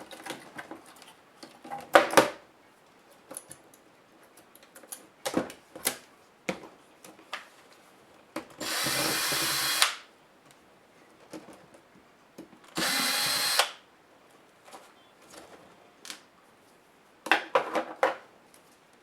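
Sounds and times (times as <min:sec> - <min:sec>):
electric screwdriver running: 0:08.6 - 0:10.0, 0:12.8 - 0:13.8.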